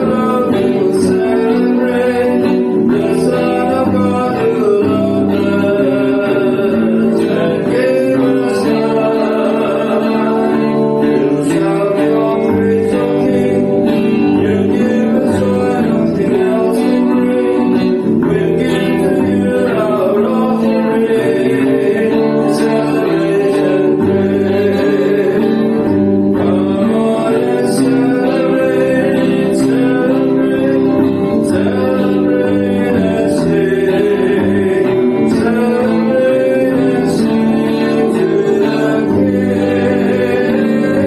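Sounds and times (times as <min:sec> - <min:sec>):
guitar accompaniment: 0:00.0 - 0:41.0
voices singing: 0:00.0 - 0:41.0.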